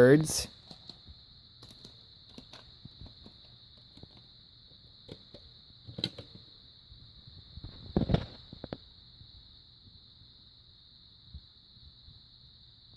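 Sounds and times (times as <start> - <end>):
faint high-pitched whine: 0.0 - 12.9
small objects clicking and tapping: 0.6 - 4.3, 5.0 - 6.5.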